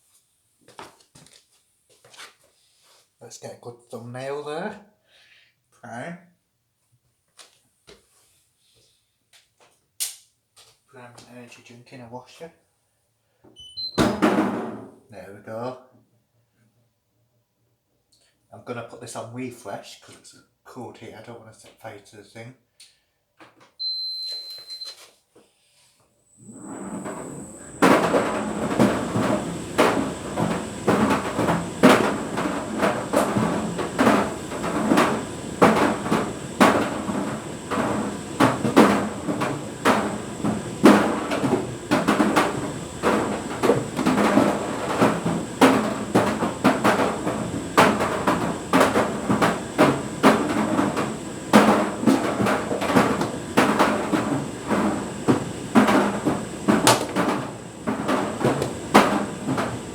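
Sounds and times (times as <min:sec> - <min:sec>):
can knocking in dryer drum: 0:14.0 - 0:14.9, 0:26.4 - 0:59.9
steady high whine: 0:26.3 - 0:59.9.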